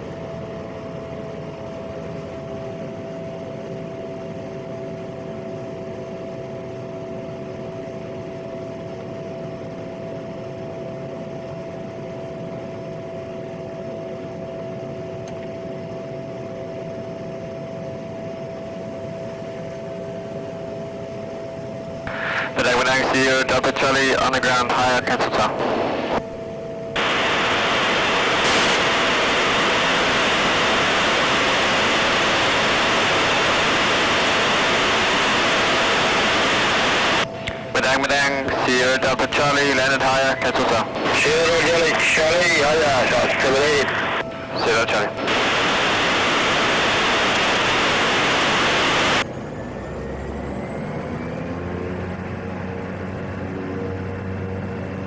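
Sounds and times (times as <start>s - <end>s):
radio static hiss: 22.1s - 49.2s
turbine engine hum: 22.1s - 49.2s.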